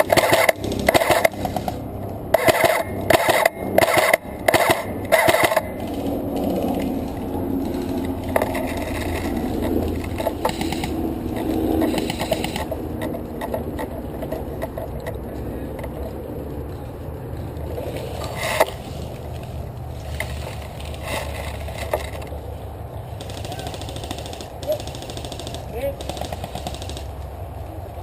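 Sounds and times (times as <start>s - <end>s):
low rumble: 0.6s - 22.6s
rustling and crunching: 2.4s - 22.4s.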